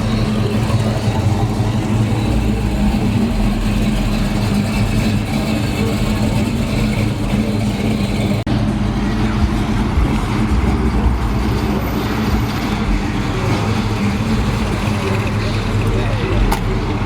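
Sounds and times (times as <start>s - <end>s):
car engine running: 0.0s - 17.0s.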